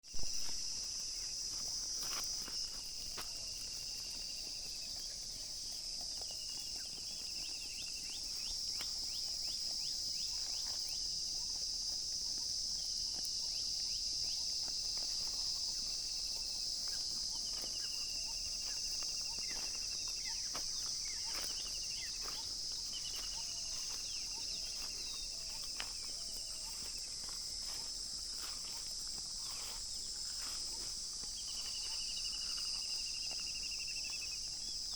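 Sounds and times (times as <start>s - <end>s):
crickets chirping: 0.0s - 34.9s
insect trilling calls: 0.1s - 34.9s.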